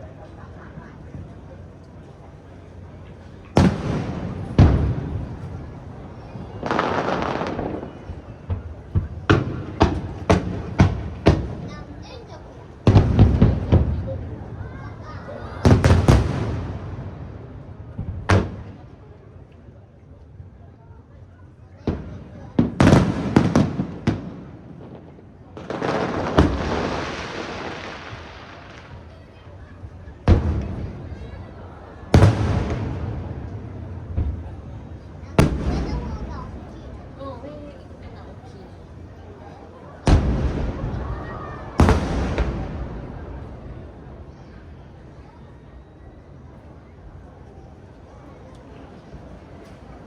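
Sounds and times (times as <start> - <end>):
fireworks booming: 0.2 - 19.0, 21.8 - 44.4
fireworks hissing crackle: 1.5 - 14.1, 25.6 - 39.1
sharp firework bangs: 3.6 - 12.0, 12.8 - 14.1, 15.6 - 17.2, 21.9 - 29.1, 30.2 - 31.4, 32.0 - 37.2, 40.0 - 43.7.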